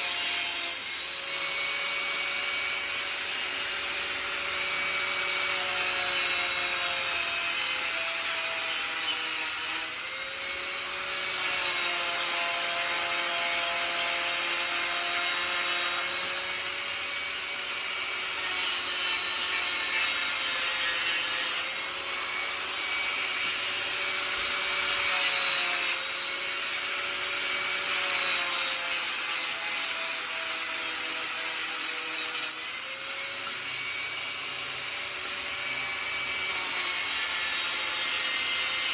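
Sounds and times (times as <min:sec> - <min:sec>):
abrasive rasping on metal: 0:00.0 - 0:38.9
power sander motor whine: 0:12.2 - 0:27.9.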